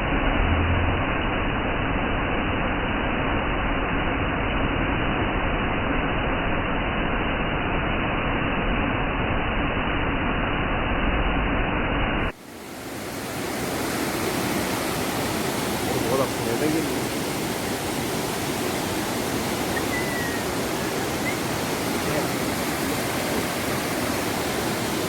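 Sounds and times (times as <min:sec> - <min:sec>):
waterfall rushing: 0:12.2 - 0:25.0.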